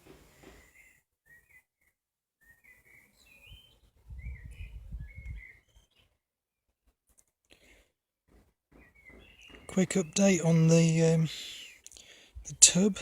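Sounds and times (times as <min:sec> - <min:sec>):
low rumble on microphone: 0:04.0 - 0:05.5.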